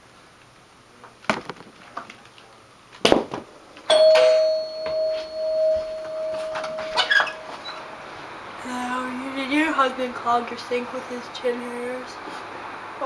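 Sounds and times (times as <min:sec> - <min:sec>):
doorbell ringing: 0:03.9 - 0:08.1.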